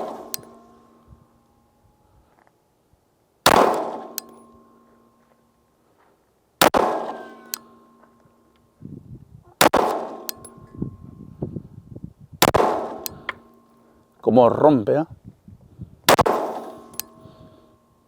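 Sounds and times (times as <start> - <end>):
pistol shots echoing: 0.0 - 1.0, 3.4 - 4.8, 6.6 - 8.0, 9.6 - 10.5, 12.4 - 13.4, 16.1 - 17.2.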